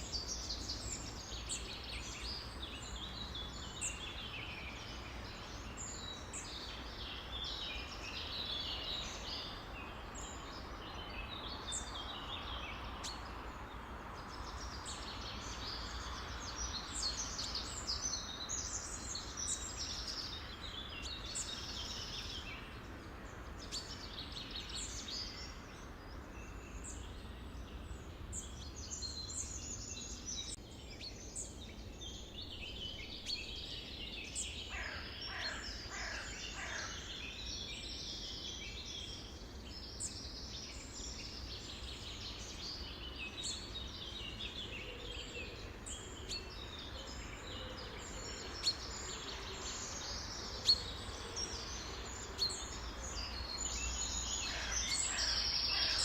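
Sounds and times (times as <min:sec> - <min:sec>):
songbirds chirping and trilling: 0:00.0 - 0:56.0.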